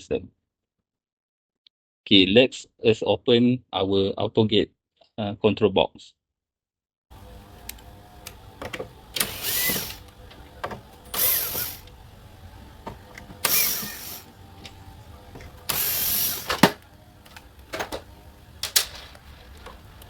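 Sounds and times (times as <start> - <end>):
cordless screwdriver whirring: 7.2 - 20.0.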